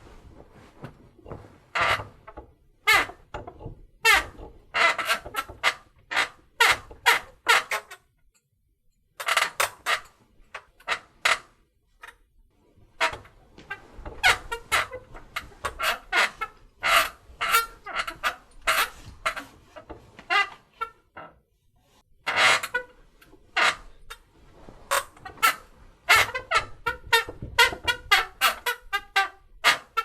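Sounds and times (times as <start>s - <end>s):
bed springs squeaking: 0.6s - 8.0s, 13.0s - 21.0s, 22.2s - 24.2s, 24.9s - 30.0s.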